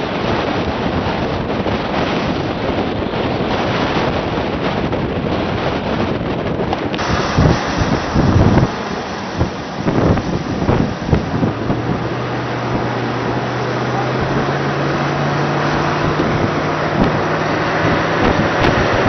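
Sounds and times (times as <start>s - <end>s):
storm wind on microphone: 0.0s - 19.0s
steady low hum: 6.9s - 19.0s.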